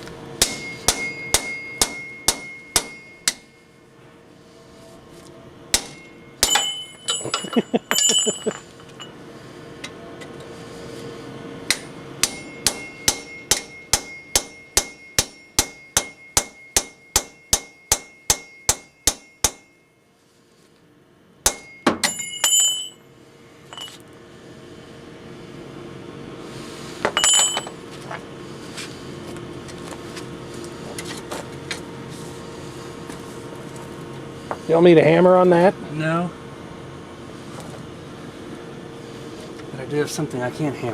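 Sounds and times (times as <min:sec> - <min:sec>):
hammer striking metal: 0:00.4 - 0:03.6, 0:05.7 - 0:09.1, 0:11.7 - 0:19.9, 0:21.4 - 0:23.0, 0:27.0 - 0:27.8.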